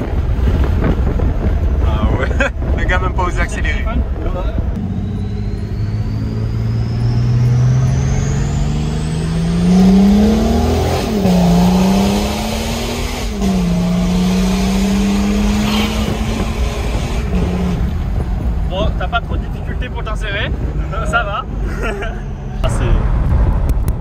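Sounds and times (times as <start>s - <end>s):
diesel engine accelerating through gears: 4.0s - 24.0s
turbo whistle: 4.9s - 8.7s.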